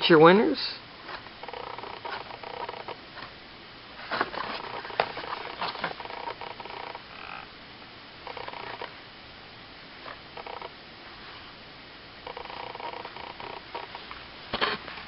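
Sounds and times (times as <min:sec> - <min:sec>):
scratchy handling rustling: 0:04.0 - 0:07.0.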